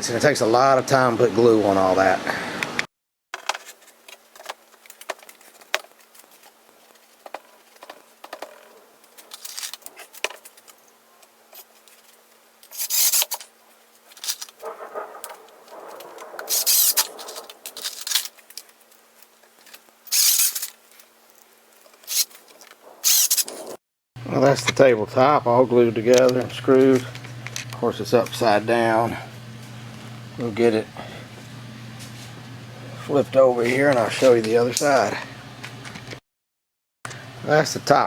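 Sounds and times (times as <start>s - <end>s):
loud rasping bursts: 12.7s - 13.4s, 14.6s - 17.5s, 20.1s - 20.7s, 22.0s - 22.4s, 23.0s - 23.7s.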